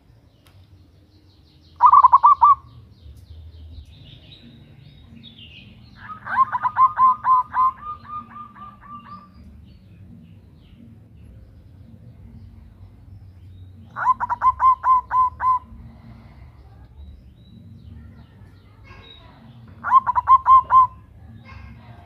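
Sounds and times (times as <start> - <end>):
dove cooing: 1.8 - 2.7, 5.9 - 9.9, 13.9 - 15.9, 19.6 - 22.0.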